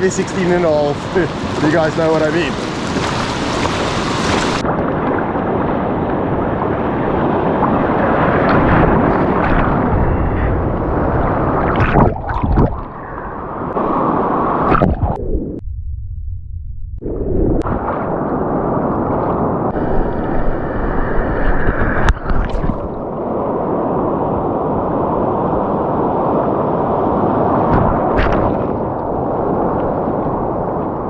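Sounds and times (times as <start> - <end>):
surf rushing at shoreline: 0.0 - 14.8.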